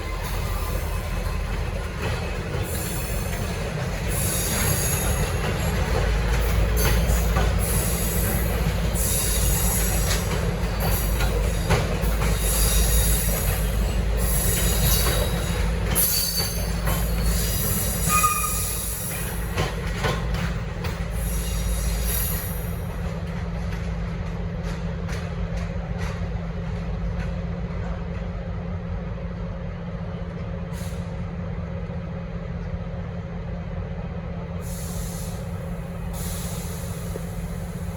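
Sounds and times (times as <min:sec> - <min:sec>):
train wheels squealing: 0:00.0 - 0:23.0, 0:34.6 - 0:37.9
rail clatter: 0:00.0 - 0:28.5.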